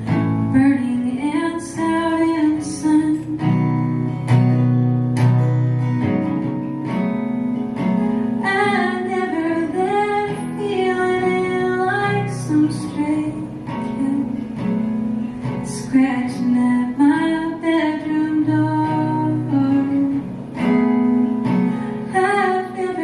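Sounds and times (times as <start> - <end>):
woman singing: 0.0 - 4.1, 8.3 - 14.8, 15.4 - 23.0
strummed acoustic guitar: 0.0 - 23.0.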